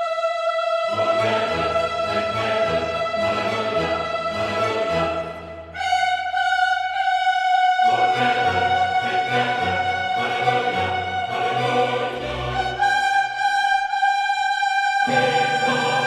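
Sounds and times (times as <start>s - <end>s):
orchestral string music: 0.9s - 6.4s, 7.9s - 13.7s, 15.0s - 16.0s.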